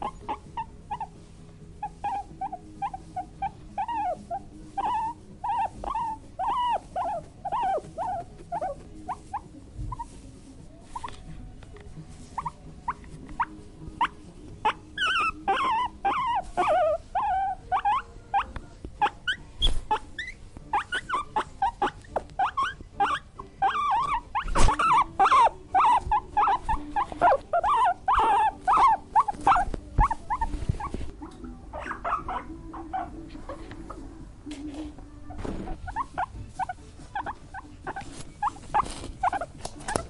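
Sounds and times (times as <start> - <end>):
pigs squealing: 14.6 - 30.4.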